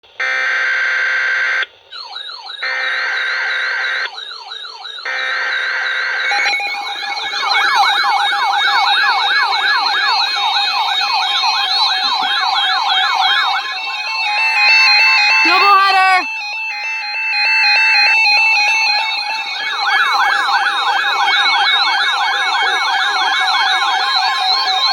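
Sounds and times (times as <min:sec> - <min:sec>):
wailing siren-like sweep: 0:00.4 - 0:24.9
electronic tone chord: 0:05.0 - 0:20.9.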